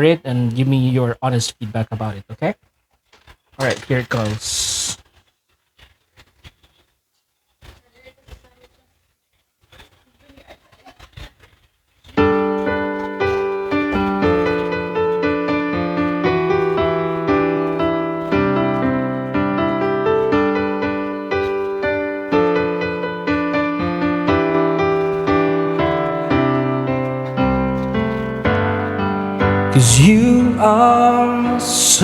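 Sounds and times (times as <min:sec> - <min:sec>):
slow piano chords: 0:12.2 - 0:32.0.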